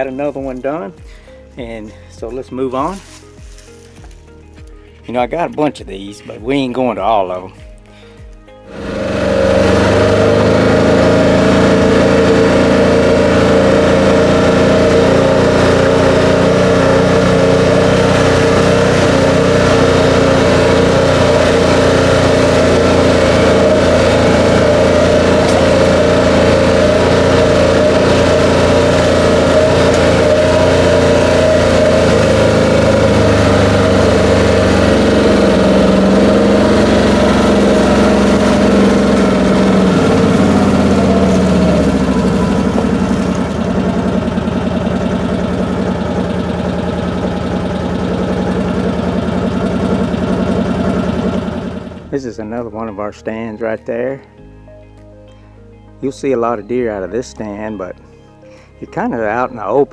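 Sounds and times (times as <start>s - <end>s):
vehicle engine drone: 8.0s - 53.0s
steady whine: 8.7s - 52.6s.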